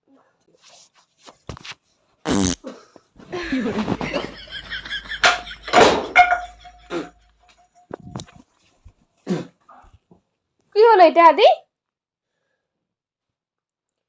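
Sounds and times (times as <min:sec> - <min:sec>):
farting: 0:02.3 - 0:02.6.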